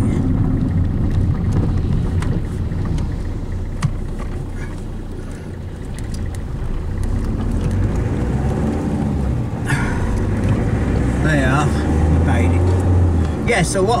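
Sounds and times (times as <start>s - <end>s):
truck engine and road noise: 0.0s - 14.0s
faint clicks: 0.6s - 8.3s.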